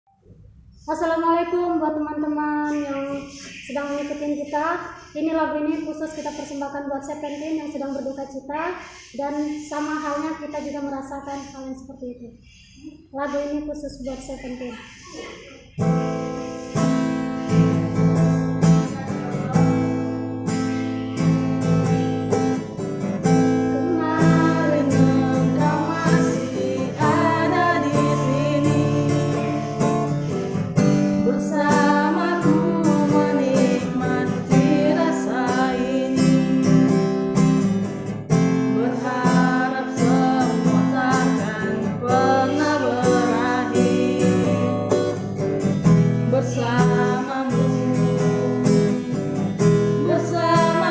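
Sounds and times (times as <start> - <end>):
acoustic guitar strumming: 15.7 - 50.9
person singing: 21.6 - 37.6, 38.4 - 45.2, 46.3 - 49.4, 50.0 - 50.9.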